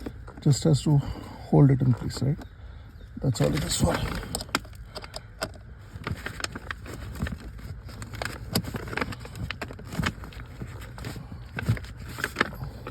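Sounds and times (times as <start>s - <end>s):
low steady rumble: 0.0s - 12.9s
tools and plastic parts clicking: 3.4s - 12.9s.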